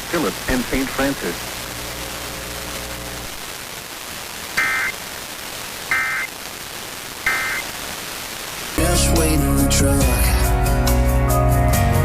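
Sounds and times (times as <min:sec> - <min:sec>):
radio hiss: 0:00.0 - 0:08.8
high-pitched digital data bursts: 0:04.6 - 0:05.0, 0:05.9 - 0:06.3, 0:07.2 - 0:07.7.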